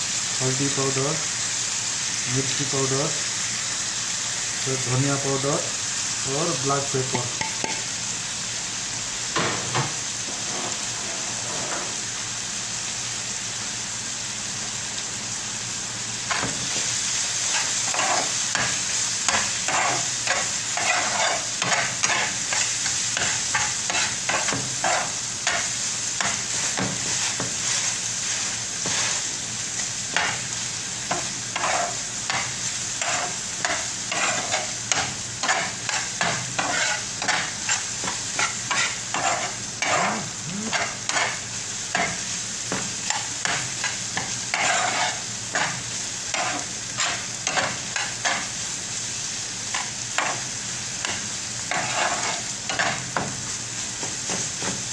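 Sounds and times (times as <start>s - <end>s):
masala sizzling in hot oil: 0.0s - 54.9s
spatula scraping and stirring: 17.4s - 29.4s, 31.1s - 42.2s, 43.1s - 48.5s, 51.0s - 53.0s.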